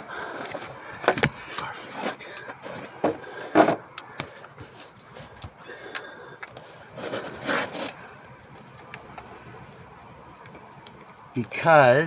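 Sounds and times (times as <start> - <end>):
rubber seal scraping: 6.5 - 8.2.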